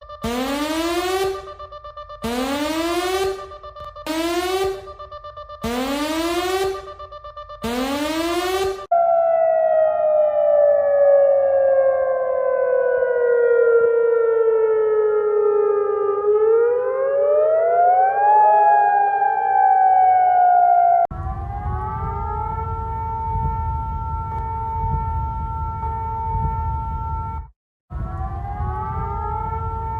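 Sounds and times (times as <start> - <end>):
civil defense siren wailing: 0.0 - 29.9
siren holding steady tone: 0.0 - 29.9.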